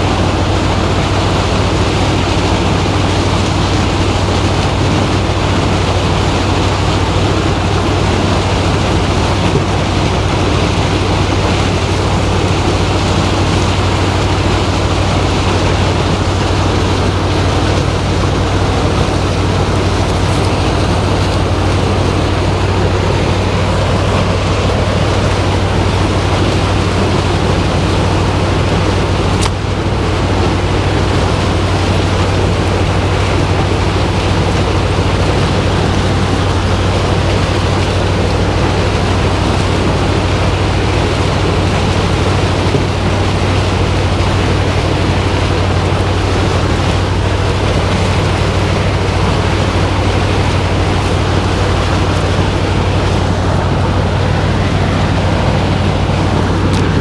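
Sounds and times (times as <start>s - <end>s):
farm machinery engine running: 0.0s - 57.0s.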